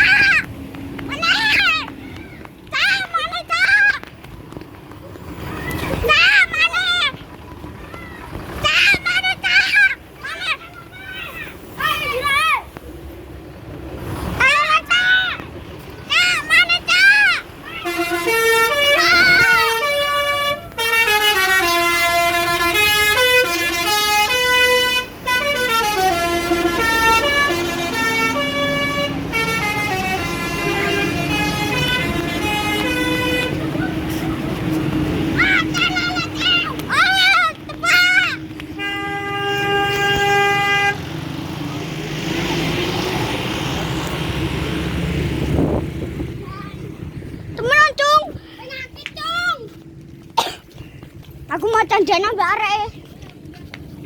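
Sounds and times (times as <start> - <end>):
bus engine and road noise: 0.0 - 54.0
multi-tone bus air horn melody: 17.8 - 36.4, 38.7 - 41.3.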